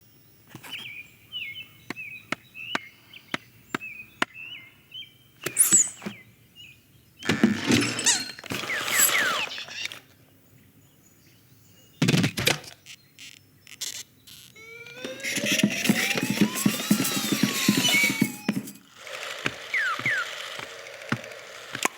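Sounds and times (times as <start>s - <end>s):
bird chirping: 0.6s - 7.4s
quick squeaks: 5.4s - 6.2s, 7.3s - 10.1s, 12.6s - 21.2s
evenly spaced sharp ticks: 13.2s - 21.9s.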